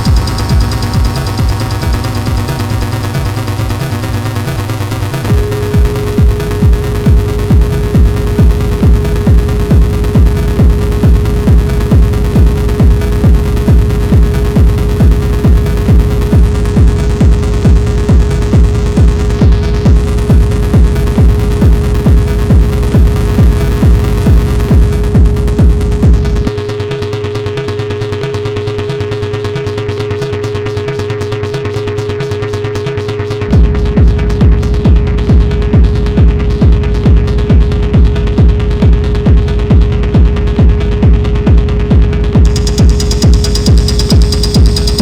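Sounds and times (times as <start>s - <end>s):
heavy kick drum beating: 0.0s - 3.8s, 5.3s - 26.5s, 33.5s - 45.0s
steady held synth tone: 0.0s - 4.6s, 42.5s - 45.0s.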